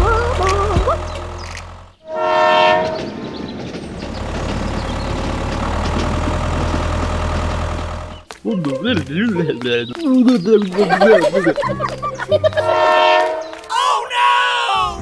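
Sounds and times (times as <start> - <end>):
low mechanical hum: 0.0 - 2.0, 3.7 - 9.3
horn blast: 0.0 - 5.2, 12.3 - 13.8.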